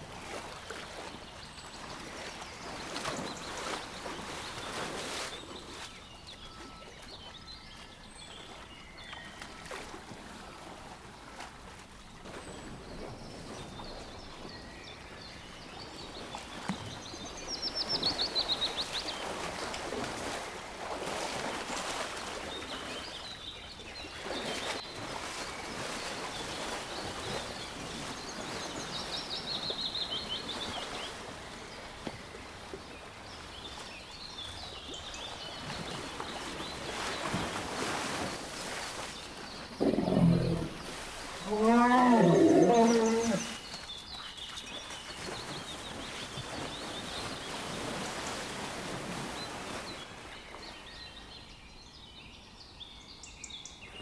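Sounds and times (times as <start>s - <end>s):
songbirds chirping: 0.3s - 19.7s, 21.6s - 48.5s.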